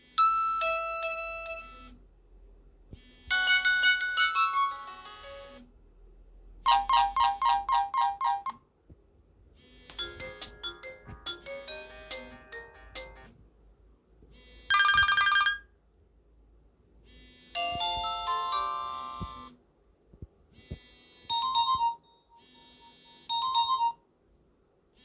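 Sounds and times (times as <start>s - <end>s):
phone ringtones and alert tones: 0.2s - 2.0s, 3.0s - 5.6s, 6.7s - 8.6s, 9.6s - 13.4s, 14.4s - 15.7s, 17.1s - 19.6s, 20.6s - 24.0s.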